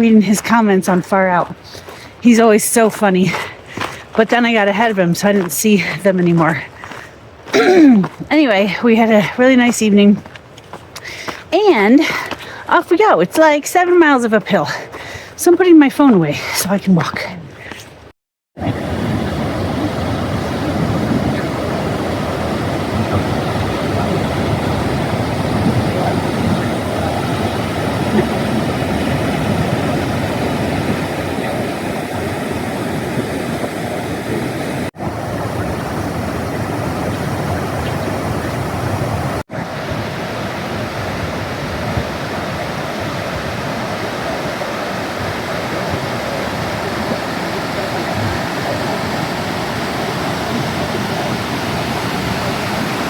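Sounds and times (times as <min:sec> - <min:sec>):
fast-flowing stream: 0:18.6 - 0:53.0.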